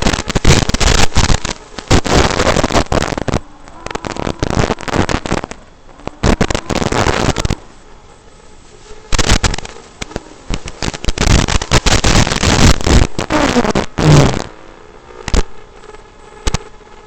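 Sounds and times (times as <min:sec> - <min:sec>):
sliding whine: 0:00.0 - 0:14.5
faint steady hum: 0:00.0 - 0:17.0
harsh crackling noise: 0:00.0 - 0:17.0
sharp clicks: 0:15.2 - 0:15.5, 0:16.4 - 0:16.7.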